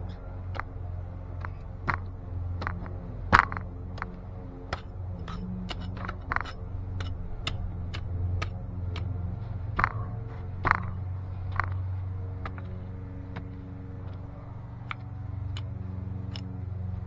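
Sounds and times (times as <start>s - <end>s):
low hum: 0.0s - 17.0s
shovel striking roots: 1.4s - 9.2s
shovel digging in soil: 4.7s - 8.5s.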